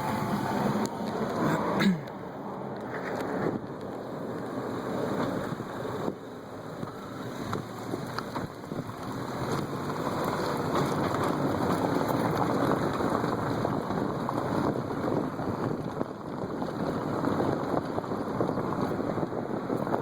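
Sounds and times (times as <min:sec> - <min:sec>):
tyre and road rumble: 0:00.0 - 0:20.0
wind buffeting microphone: 0:00.0 - 0:20.0.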